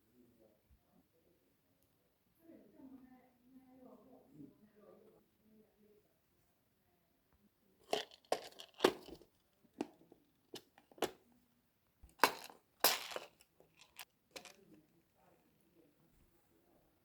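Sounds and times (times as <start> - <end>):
handling crackles scrapes and knocks: 7.9 - 11.1, 12.1 - 14.7.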